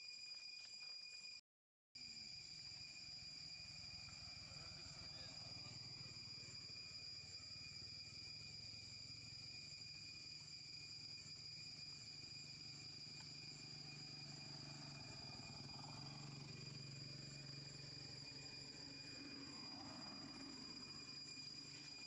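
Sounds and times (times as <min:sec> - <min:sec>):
insect whine: 0:00.0 - 0:01.4, 0:02.0 - 0:22.0.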